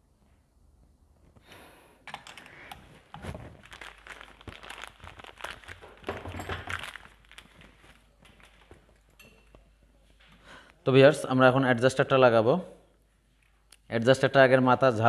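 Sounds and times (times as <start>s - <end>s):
clicks and clatters of parts: 2.0s - 3.4s, 5.7s - 7.2s
rustling and crinkling: 2.1s - 10.4s.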